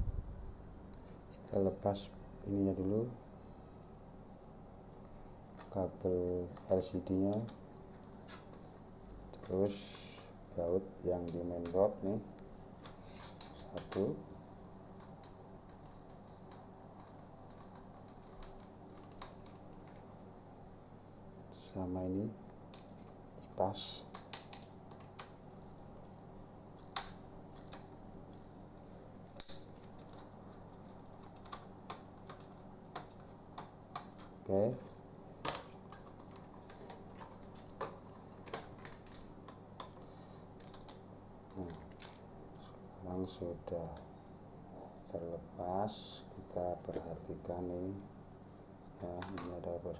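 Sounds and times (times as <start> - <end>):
low steady hum: 0.0 - 49.9
small tools and parts clicking: 12.8 - 20.3, 22.6 - 28.6, 29.3 - 42.3.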